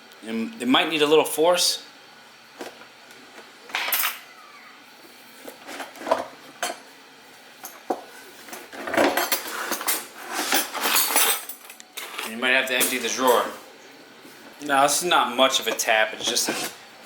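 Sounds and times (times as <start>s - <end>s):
cutlery rattling in drawer: 8.6s - 13.5s.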